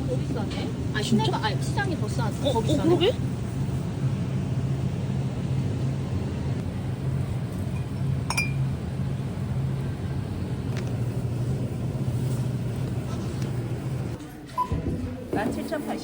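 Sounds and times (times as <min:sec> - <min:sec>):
steady low hum: 0:00.0 - 0:16.0
light clink with ringing tone: 0:07.8 - 0:08.7.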